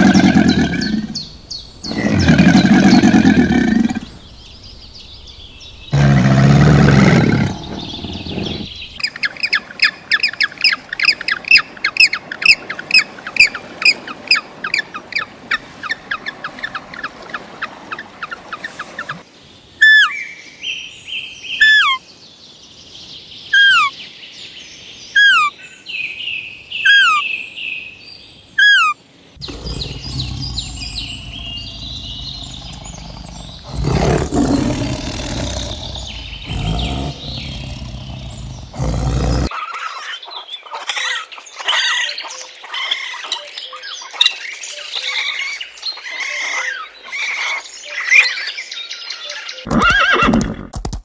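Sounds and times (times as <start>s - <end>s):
rough animal calls: 0.0s - 4.2s, 5.9s - 19.2s, 28.7s - 39.7s
jumble of chirps: 0.0s - 11.6s, 29.4s - 39.5s
high falling animal chirp: 28.7s - 39.5s.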